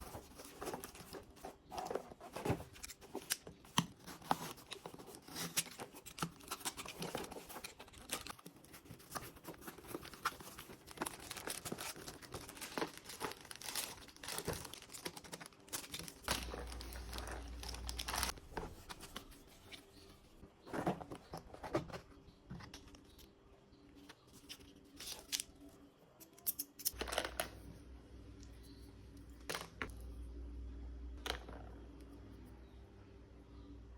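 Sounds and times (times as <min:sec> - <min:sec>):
packaging rustling and tearing: 0:00.0 - 0:19.4.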